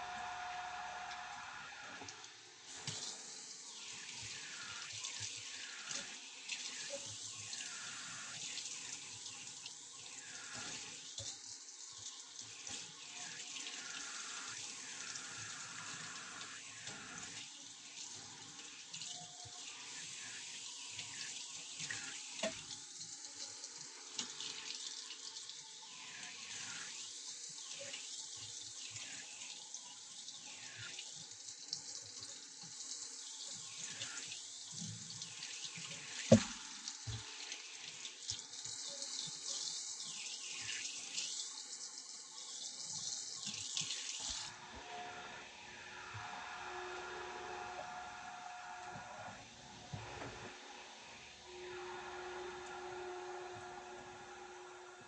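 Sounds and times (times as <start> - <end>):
tap water running into sink: 2.0 - 44.5.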